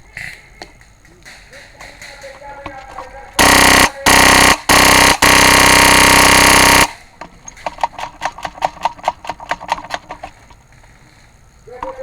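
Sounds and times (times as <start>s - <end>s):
rapid sharp clicks: 3.4s - 10.6s.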